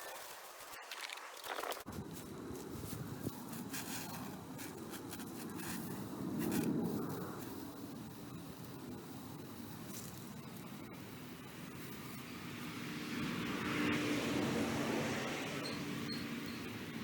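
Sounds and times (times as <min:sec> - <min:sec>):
scrubbing on stone: 0:00.0 - 0:06.8.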